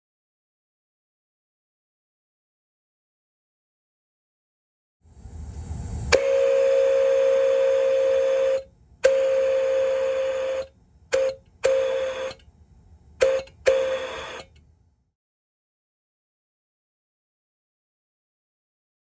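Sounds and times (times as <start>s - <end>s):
rush of air: 5.1s - 6.2s
steam whistle chord: 6.1s - 12.4s.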